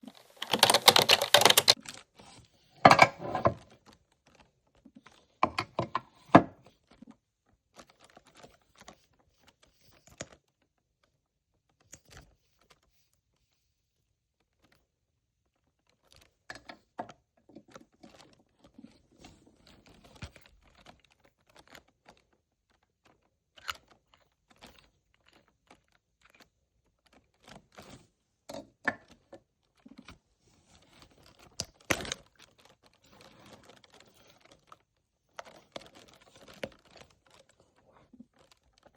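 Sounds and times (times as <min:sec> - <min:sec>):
taps and clicks of handling: 0:00.2 - 0:01.8.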